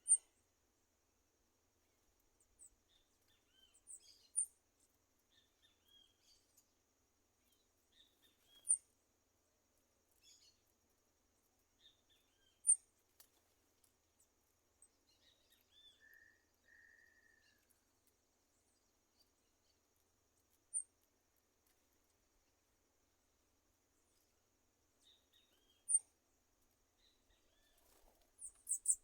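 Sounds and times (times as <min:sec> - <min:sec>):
faint high insect hum: 0:00.0 - 0:29.0
birds chirping: 0:25.0 - 0:26.1, 0:27.0 - 0:29.0.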